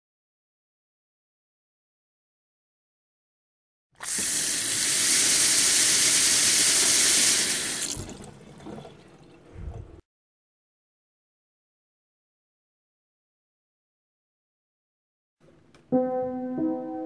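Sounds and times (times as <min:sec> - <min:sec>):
tap water rushing into sink: 0:04.0 - 0:10.0.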